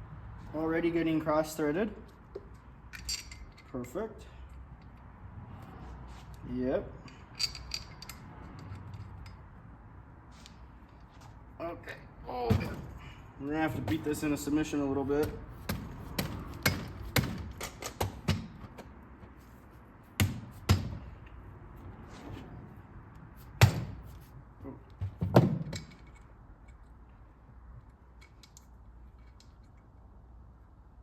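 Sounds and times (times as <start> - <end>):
hammering knocks on metal gear: 15.2 - 18.6, 20.2 - 21.1, 23.6 - 24.0.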